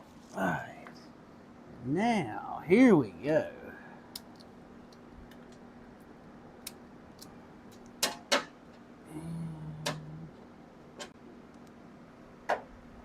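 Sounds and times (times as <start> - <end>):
short low hum: 9.0 - 10.8.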